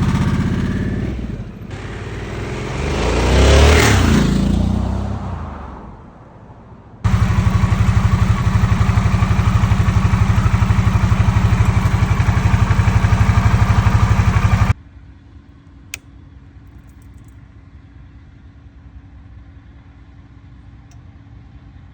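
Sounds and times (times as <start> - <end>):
motorcycle engine idling: 0.0 - 3.3, 7.1 - 14.8
click: 15.6 - 16.1.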